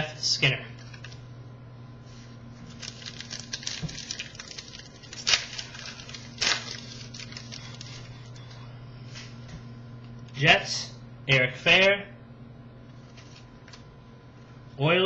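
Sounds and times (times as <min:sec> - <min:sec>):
cards being shuffled: 0:02.7 - 0:08.6, 0:13.0 - 0:13.8.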